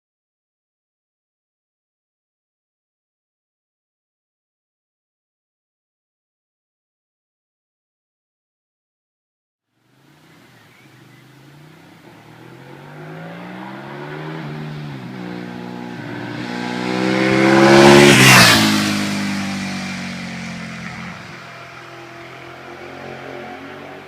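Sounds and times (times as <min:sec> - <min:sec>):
motorcycle accelerating past: 0:10.1 - 0:24.0.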